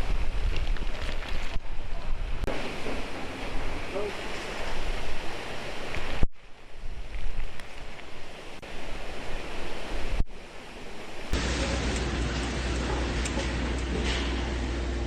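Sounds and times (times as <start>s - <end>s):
wind buffeting microphone: 0.0s - 11.6s
typhoon wind gusts: 0.0s - 15.0s
heavy rain: 2.1s - 6.9s, 7.8s - 15.0s.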